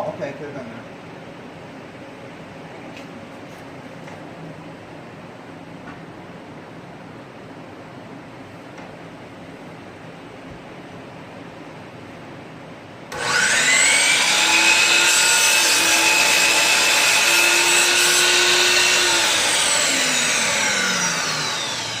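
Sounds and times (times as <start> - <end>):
electric saw motor whining: 13.1 - 22.0.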